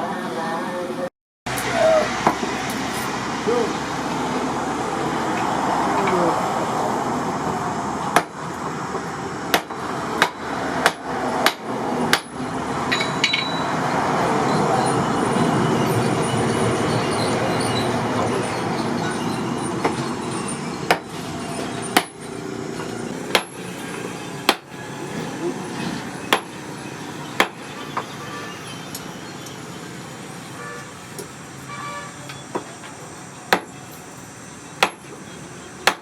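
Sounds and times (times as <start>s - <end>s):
steady background noise: 0.0s - 36.0s
hammer striking steel: 9.5s - 13.8s, 20.9s - 21.1s, 21.9s - 22.3s, 23.1s - 24.8s, 26.3s - 26.6s, 27.4s - 28.1s, 33.5s - 33.8s, 34.8s - 35.2s.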